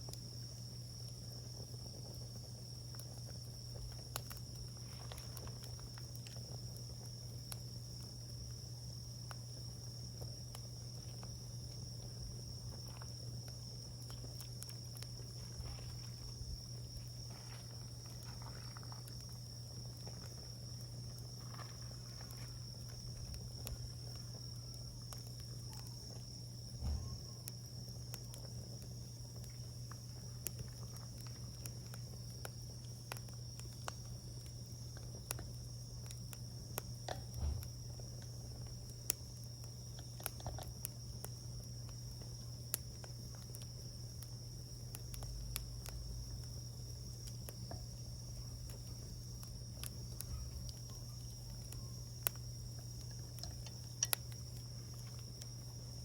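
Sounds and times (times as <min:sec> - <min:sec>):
campfire crackling and popping: 0:00.0 - 0:56.0
low steady hum: 0:00.0 - 0:56.0.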